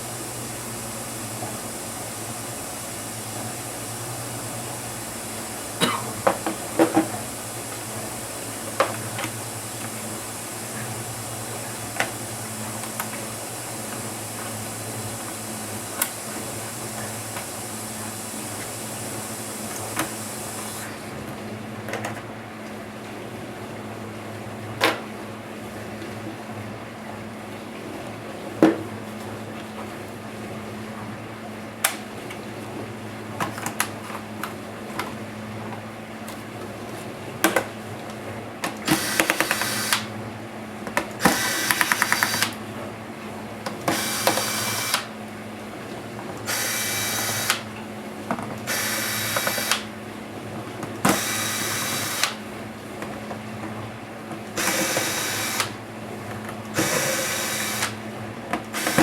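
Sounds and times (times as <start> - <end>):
electric screwdriver running: 38.9 - 40.1, 41.2 - 42.6, 43.9 - 45.1, 46.5 - 47.6, 48.7 - 49.9, 51.1 - 52.4, 54.6 - 55.8, 56.8 - 58.0, 58.8 - 59.0.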